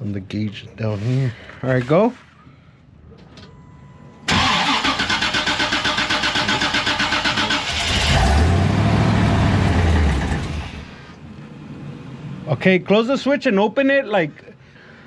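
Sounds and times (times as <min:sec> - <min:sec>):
starter cranking engine: 0:04.3 - 0:08.6.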